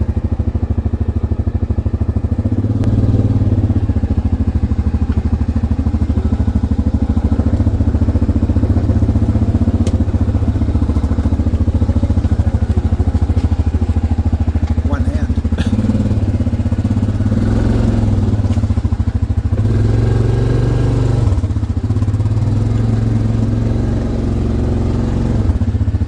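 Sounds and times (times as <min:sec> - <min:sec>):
atv engine running: 0:00.0 - 0:26.0.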